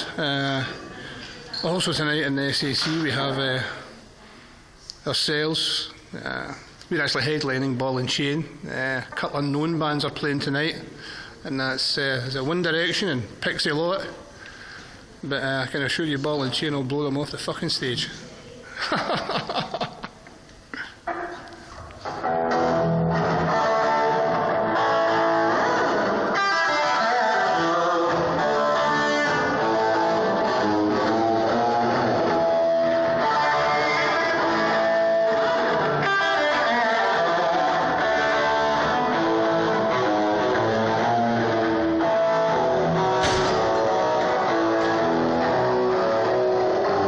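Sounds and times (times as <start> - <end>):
amplified electric guitar: 21.2 - 47.0
bass guitar: 22.0 - 47.0.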